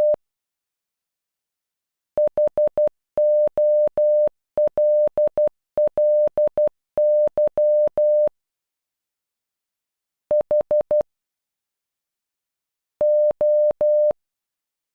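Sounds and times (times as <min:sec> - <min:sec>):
morse code beeps: 0:02.6 - 0:08.3.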